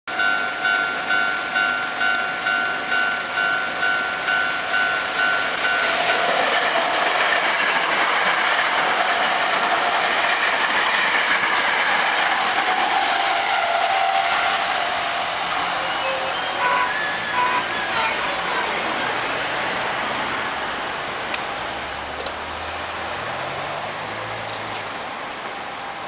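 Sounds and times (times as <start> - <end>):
level-crossing alarm bell ringing: 0.1 - 6.4, 13.9 - 19.1
electric train passing: 0.1 - 26.0.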